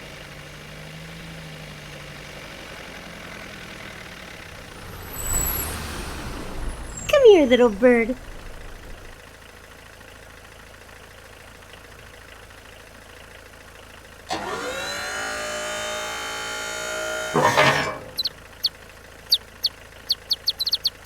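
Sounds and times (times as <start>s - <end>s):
cartoon motor whine: 4.0s - 9.2s, 14.3s - 18.7s
short noisy burst: 4.4s - 9.2s, 14.3s - 18.7s
bird chirping: 18.2s - 21.0s.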